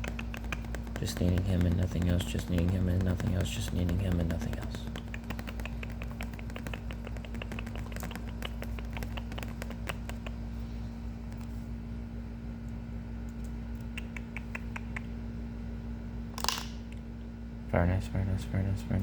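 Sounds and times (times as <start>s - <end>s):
light clicks and taps: 0.0s - 10.4s
low steady hum: 0.0s - 19.0s.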